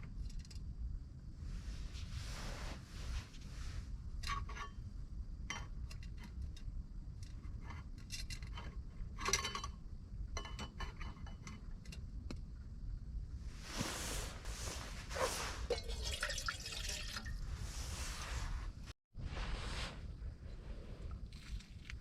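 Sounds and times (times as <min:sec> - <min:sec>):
cookware clicking and clinking: 0:15.7 - 0:17.2.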